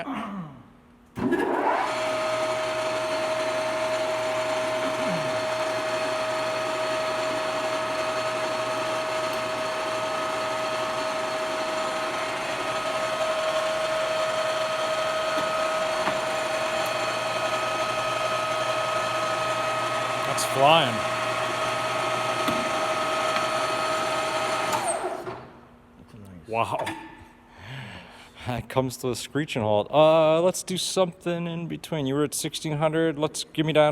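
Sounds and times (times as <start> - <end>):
lathe spindle high whine: 1.2 - 25.4.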